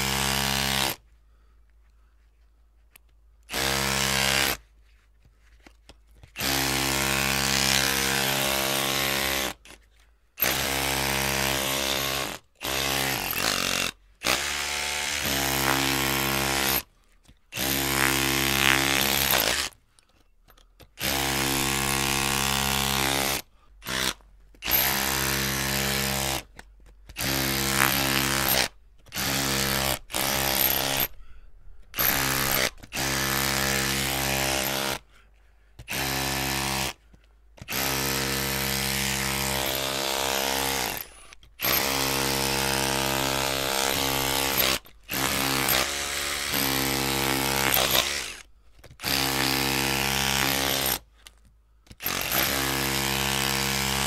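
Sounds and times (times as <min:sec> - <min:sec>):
electric drill motor bursts: 0:10.4 - 0:16.8, 0:17.6 - 0:19.7, 0:21.0 - 0:26.4, 0:27.2 - 0:31.2, 0:32.0 - 0:35.0, 0:35.8 - 0:37.0, 0:37.7 - 0:51.0, 0:52.0 - 0:54.0.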